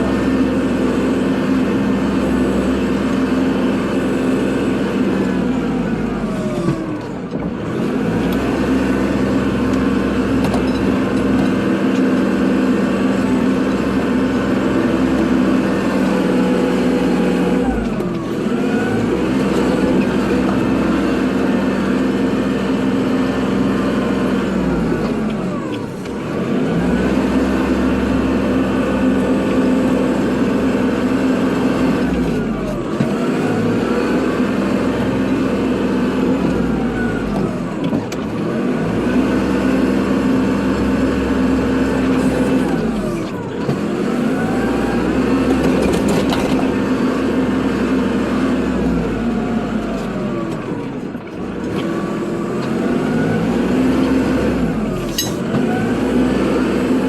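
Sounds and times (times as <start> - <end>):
tractor diesel engine running: 0.0 - 57.0.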